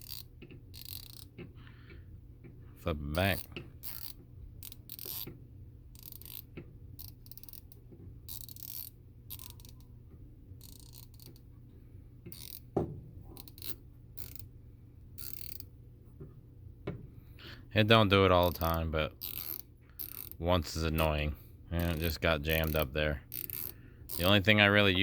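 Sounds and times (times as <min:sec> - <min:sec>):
hand ratchet clicking: 0:00.0 - 0:01.5, 0:03.1 - 0:05.3, 0:05.9 - 0:09.9, 0:10.6 - 0:11.4, 0:12.2 - 0:12.6, 0:13.4 - 0:14.4, 0:15.2 - 0:15.7, 0:18.4 - 0:21.0, 0:21.8 - 0:24.4.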